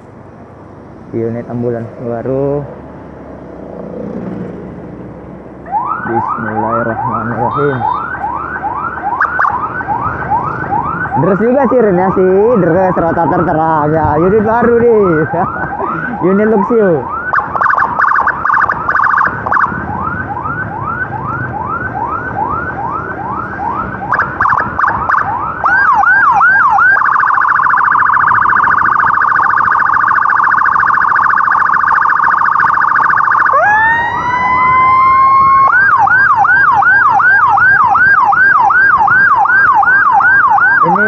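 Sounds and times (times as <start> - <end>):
faint road and engine noise: 0.0 - 41.0
electronic ambulance siren: 5.6 - 41.0.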